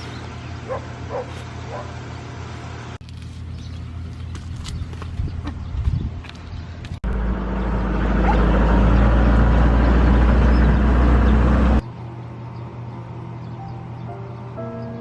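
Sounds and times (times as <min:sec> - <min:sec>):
car driving rumble: 0:00.0 - 0:11.9
outdoor ambient sounds: 0:00.0 - 0:15.0.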